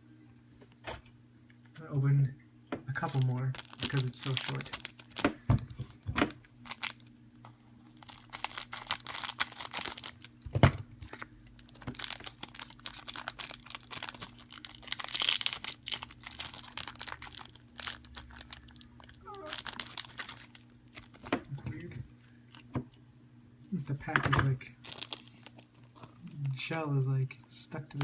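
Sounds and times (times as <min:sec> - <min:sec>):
wrapper tearing and crinkling: 0:03.0 - 0:22.7, 0:24.8 - 0:26.8.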